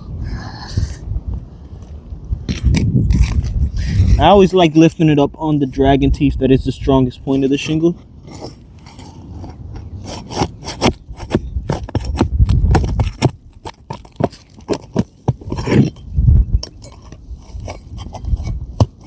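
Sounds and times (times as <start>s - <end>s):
dull low thumps: 10.9s - 14.2s, 15.1s - 16.7s.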